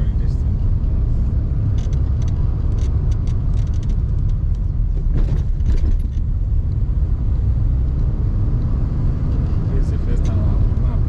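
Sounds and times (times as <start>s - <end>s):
car engine and road noise: 0.0s - 11.0s
clicks and rattles: 1.7s - 6.3s.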